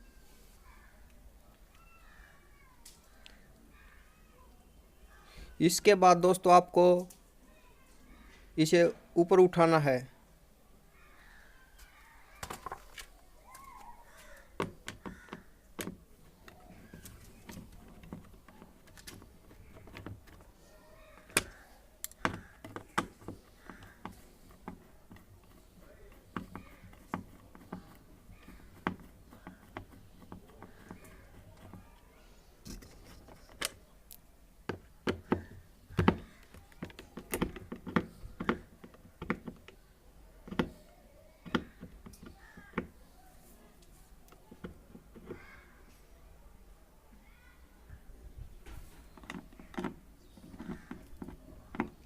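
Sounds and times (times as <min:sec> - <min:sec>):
hand tools and parts clattering: 0:14.5 - 0:32.0, 0:48.6 - 0:52.0.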